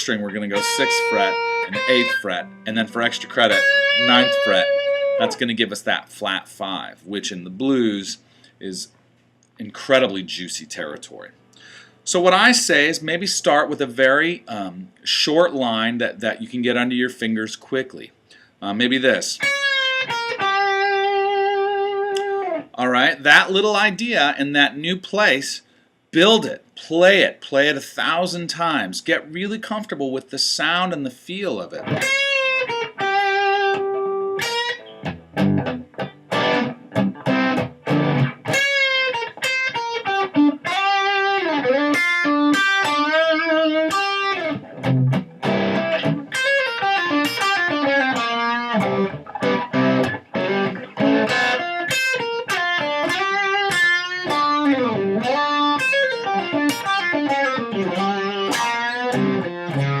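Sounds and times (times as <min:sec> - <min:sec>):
electric guitar blues lines: 0:00.0 - 0:05.6, 0:19.3 - 0:22.8, 0:31.8 - 1:00.0.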